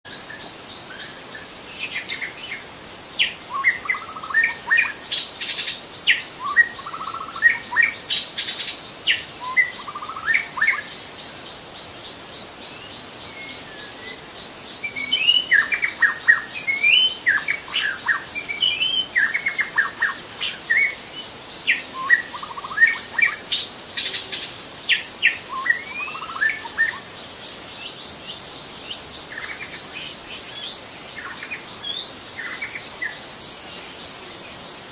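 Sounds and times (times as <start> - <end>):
high-pitched insect drone: 0.1 - 34.9
bird singing whistled phrases: 13.4 - 21.0, 25.3 - 27.0.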